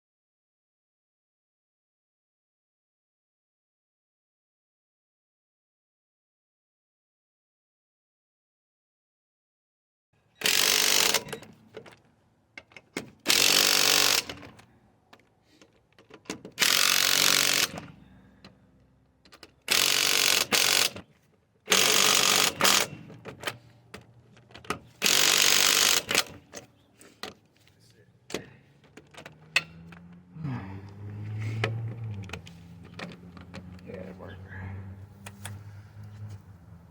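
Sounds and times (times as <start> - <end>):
impact wrench running: 10.4 - 11.4, 13.1 - 14.6, 16.5 - 18.0, 19.6 - 21.1, 21.7 - 23.4, 24.9 - 26.6.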